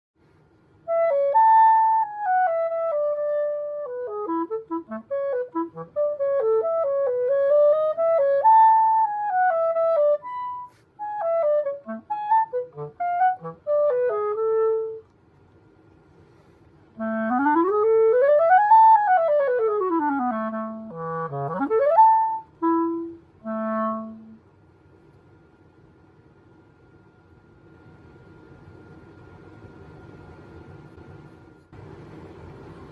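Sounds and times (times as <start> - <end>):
clarinet playing solo: 0.8 - 15.1, 17.0 - 24.4.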